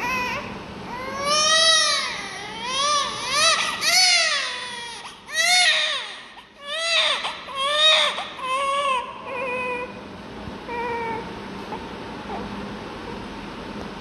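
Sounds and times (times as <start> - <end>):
newborn baby crying: 0.0 - 10.0, 10.7 - 11.2.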